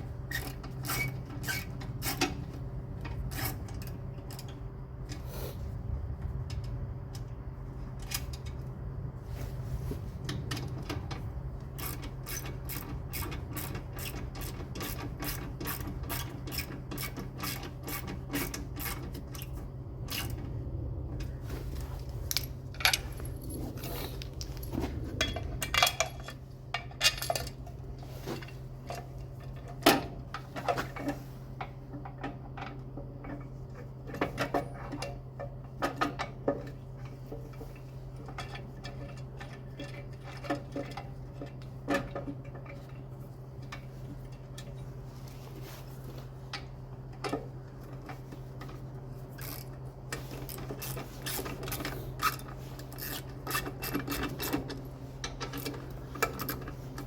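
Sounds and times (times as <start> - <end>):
ratchet spanner clicking: 11.8 - 19.5, 49.4 - 49.8, 50.5 - 56.7
low hum: 17.9 - 30.5
metal tools clinking: 22.2 - 29.8.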